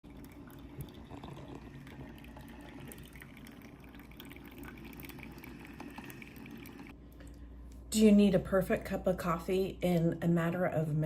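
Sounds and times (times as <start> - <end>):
coffee maker hum: 0.0 - 7.0
liquid dripping and trickling: 0.0 - 7.5.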